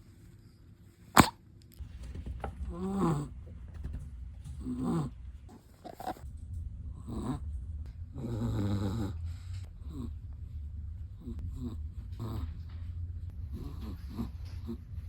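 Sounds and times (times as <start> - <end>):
dog snoring: 8.1 - 10.3, 11.2 - 12.8, 13.4 - 15.0.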